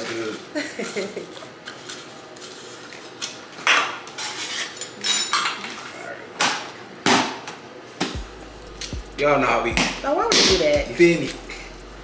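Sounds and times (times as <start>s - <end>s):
pans and utensils clattering: 3.6s - 6.7s.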